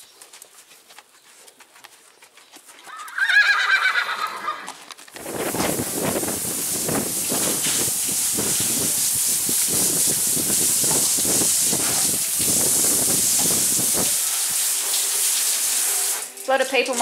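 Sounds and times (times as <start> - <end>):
hose spraying water: 5.2 - 17.0
water splashing: 5.2 - 17.0.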